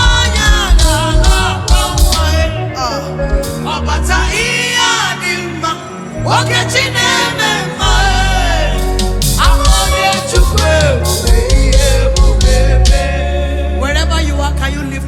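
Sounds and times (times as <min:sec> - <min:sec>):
bass and drums: 0:00.0 - 0:03.7, 0:07.9 - 0:15.0
gospel band playing: 0:00.0 - 0:15.0
lead vocal singing: 0:00.0 - 0:15.0.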